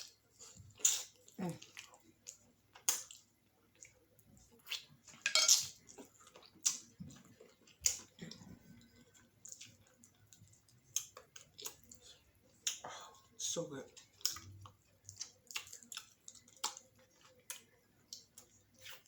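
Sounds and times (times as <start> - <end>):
mouth sounds of eating: 0.0 - 19.0
utensil scraping on plate: 5.3 - 5.7.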